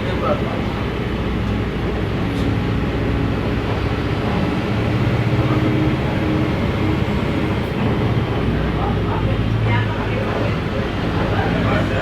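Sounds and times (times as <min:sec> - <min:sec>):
bus engine drone: 0:00.0 - 0:12.0.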